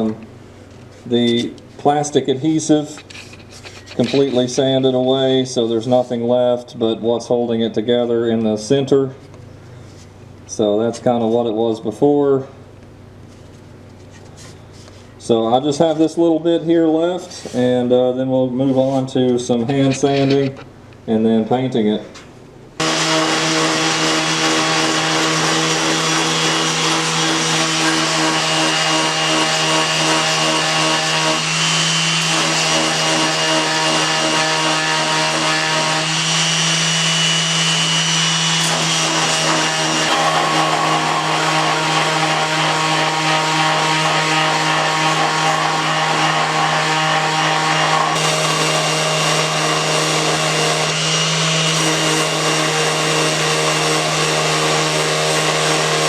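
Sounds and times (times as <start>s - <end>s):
electric power sander humming: 22.8s - 56.0s.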